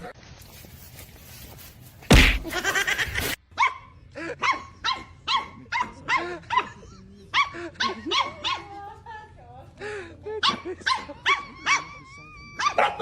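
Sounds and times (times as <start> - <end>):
dog yapping: 12.6 - 13.0.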